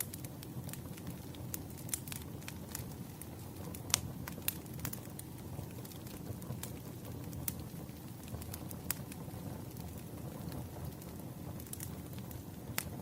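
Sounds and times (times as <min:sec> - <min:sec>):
firewood crackling: 0:00.0 - 0:13.0
low rumble of flames: 0:00.0 - 0:13.0
sharp pops of fire: 0:00.0 - 0:13.0.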